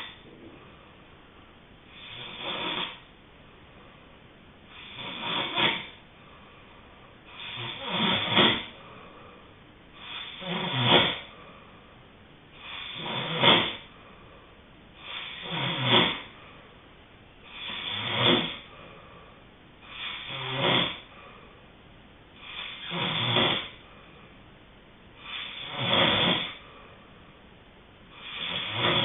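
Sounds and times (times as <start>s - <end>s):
person snoring: 1.9s - 3.0s, 4.7s - 6.0s, 7.3s - 9.4s, 10.0s - 11.6s, 12.5s - 13.9s, 15.0s - 16.4s, 17.4s - 21.5s, 22.4s - 23.8s, 25.2s - 26.9s, 28.1s - 29.0s.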